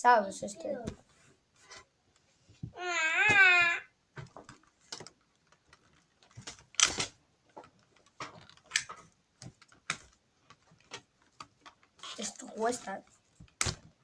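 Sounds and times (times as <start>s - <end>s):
child's wavering vocal sound: 2.8s - 3.9s.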